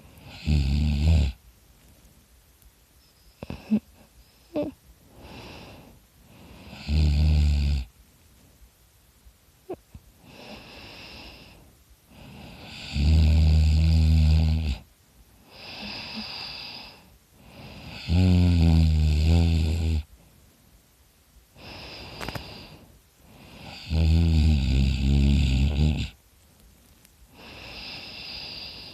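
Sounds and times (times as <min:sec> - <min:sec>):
soft airy breaths: 0:00.0 - 0:13.1, 0:14.5 - 0:28.9
person snoring loudly: 0:00.2 - 0:01.4, 0:06.6 - 0:07.9, 0:12.3 - 0:14.9, 0:17.6 - 0:20.1, 0:23.5 - 0:26.2.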